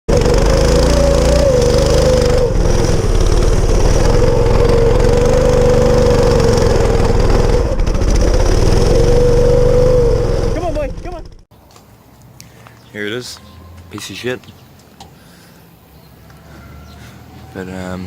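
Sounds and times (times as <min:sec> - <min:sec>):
go-kart engine running: 0:00.1 - 0:11.4.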